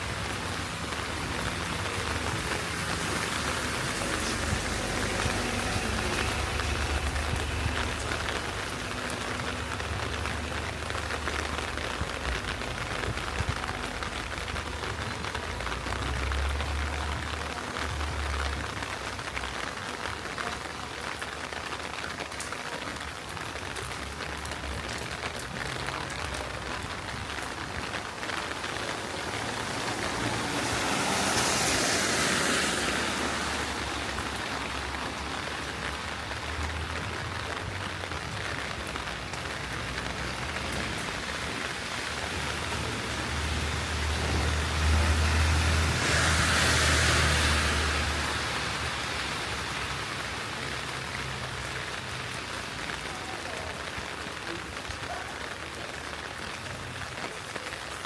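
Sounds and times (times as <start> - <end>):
heavy rain on street: 0.0 - 58.0.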